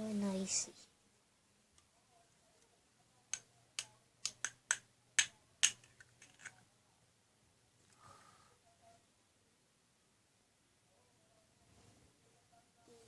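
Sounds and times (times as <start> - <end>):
plastic pieces clicking: 3.3 - 6.6.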